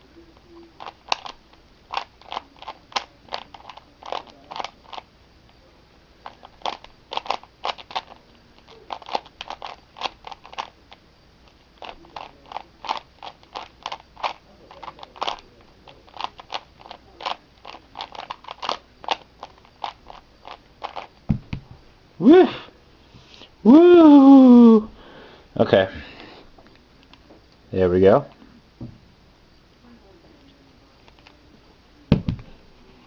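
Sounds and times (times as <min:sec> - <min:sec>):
puzzle cube plastic clicks: 0:00.8 - 0:05.0, 0:06.2 - 0:21.2.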